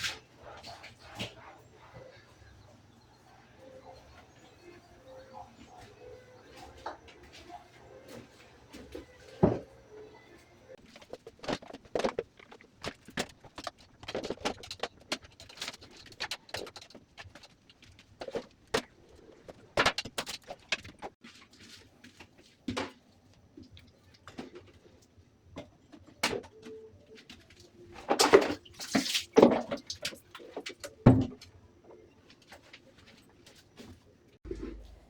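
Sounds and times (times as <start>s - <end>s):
objects clicking and knocking: 10.8s - 24.9s.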